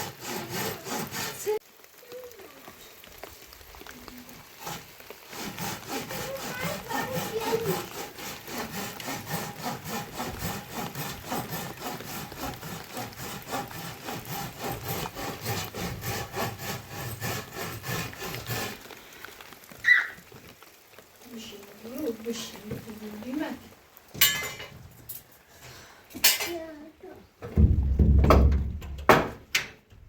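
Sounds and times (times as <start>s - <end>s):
scraping strokes on wood: 0.0s - 1.6s, 4.5s - 19.0s.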